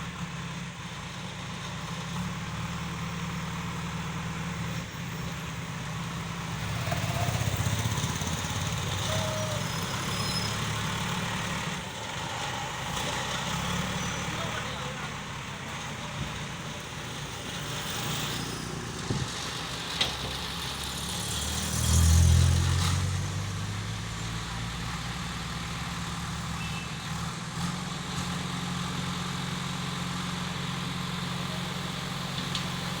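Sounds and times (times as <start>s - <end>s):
heavy engine idling: 0.0s - 21.2s, 23.0s - 33.0s
vehicle passing: 6.2s - 24.5s.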